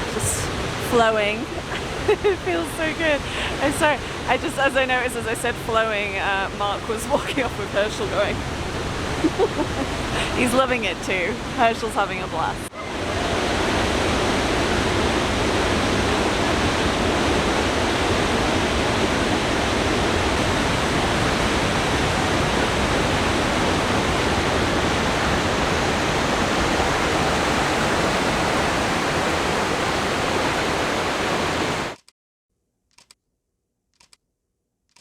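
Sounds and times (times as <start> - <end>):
waterfall rushing: 12.7 - 32.0.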